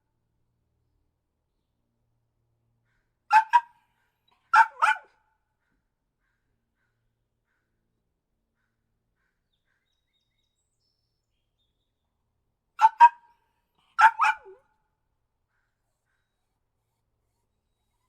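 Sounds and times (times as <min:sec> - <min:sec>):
puppy yapping: 0:03.3 - 0:03.7, 0:04.5 - 0:05.2, 0:12.8 - 0:13.3, 0:14.0 - 0:14.6.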